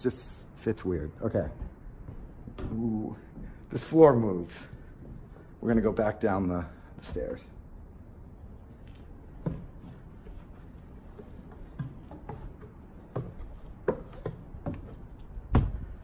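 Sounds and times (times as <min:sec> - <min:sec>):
footsteps on wooden staircase: 0:01.4 - 0:03.6, 0:08.8 - 0:16.0.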